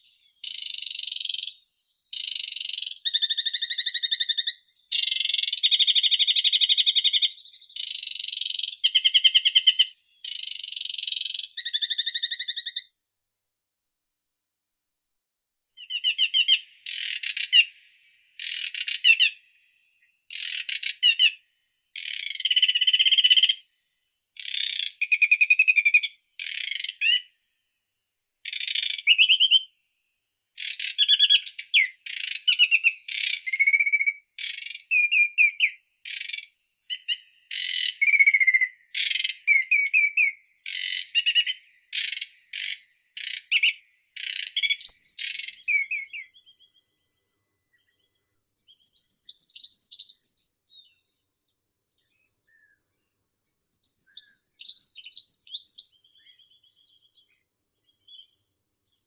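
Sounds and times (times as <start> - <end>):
songbird trilling: 0.0 - 12.8, 39.4 - 46.7, 48.4 - 59.0
high sweeping bird call: 44.6 - 46.3.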